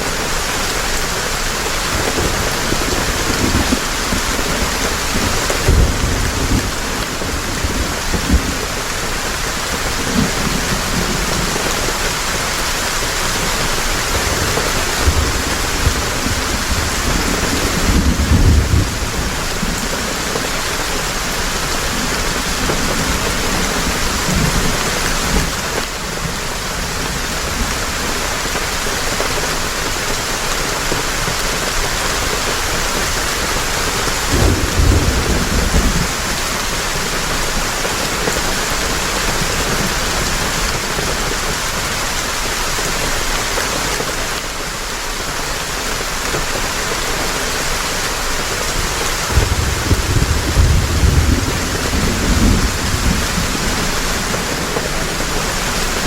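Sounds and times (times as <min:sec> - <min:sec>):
heavy rain falling: 0:00.0 - 0:56.0
low rumbles: 0:49.3 - 0:56.0.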